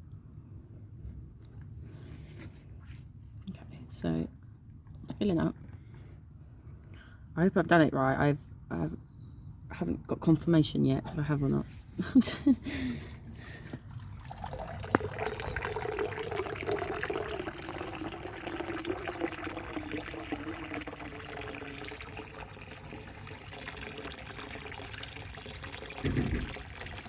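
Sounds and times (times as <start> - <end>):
water pouring and trickling: 13.2 - 27.0.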